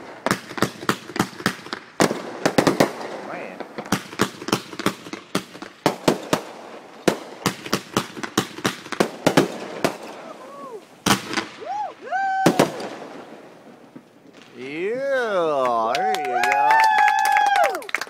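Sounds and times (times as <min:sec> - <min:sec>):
firework explosions: 0:00.0 - 0:15.9.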